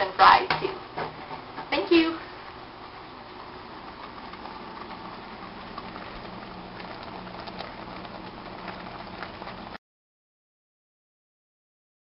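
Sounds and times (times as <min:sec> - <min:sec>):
steady low hum: 0:00.0 - 0:09.8
chili simmering with small pops: 0:00.3 - 0:09.8.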